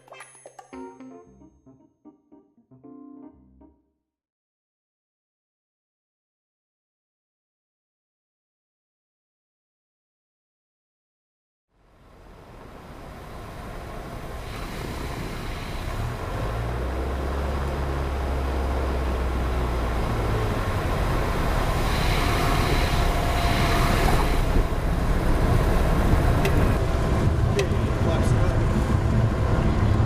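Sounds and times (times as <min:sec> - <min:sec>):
vehicle engine rumble: 0:11.8 - 0:30.0.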